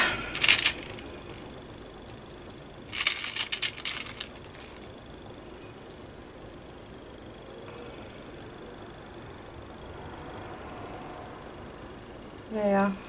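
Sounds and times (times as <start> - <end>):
beads and tools clicking: 0.3 - 1.1, 2.9 - 5.0.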